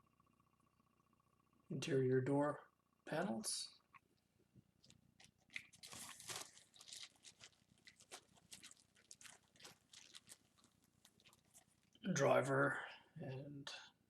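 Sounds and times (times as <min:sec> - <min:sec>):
plastic parts crinkling and clicking: 0:04.8 - 0:12.0.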